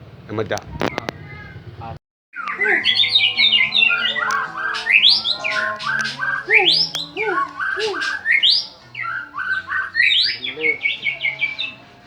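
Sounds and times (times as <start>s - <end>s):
bird singing whistled song: 2.4s - 12.0s
low background music: 2.5s - 12.0s.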